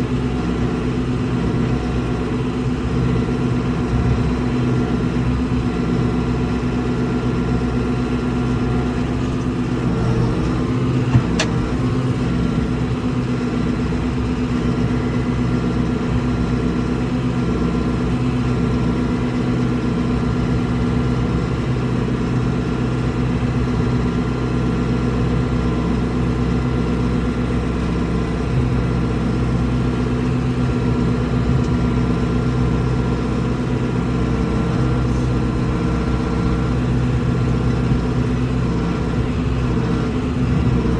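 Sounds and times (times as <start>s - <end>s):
vehicle engine running steadily: 0.0s - 40.9s
sharp click: 11.2s - 11.7s.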